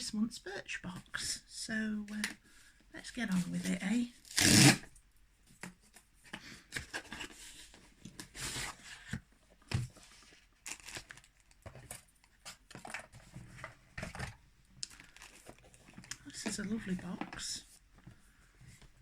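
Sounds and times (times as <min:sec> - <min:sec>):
packaging rustling and tearing: 0:09.8 - 0:16.9.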